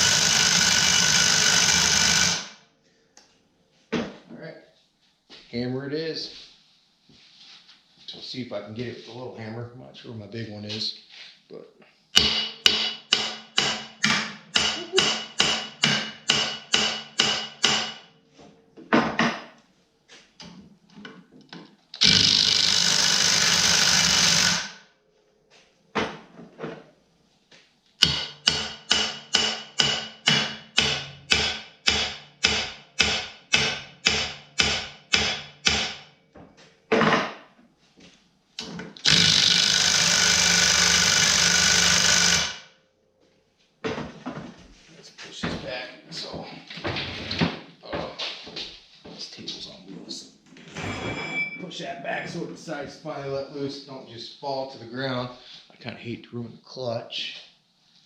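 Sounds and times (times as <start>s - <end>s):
impact wrench: 0.0s - 2.6s, 12.2s - 18.1s, 22.0s - 24.9s, 28.0s - 36.1s, 38.6s - 42.8s.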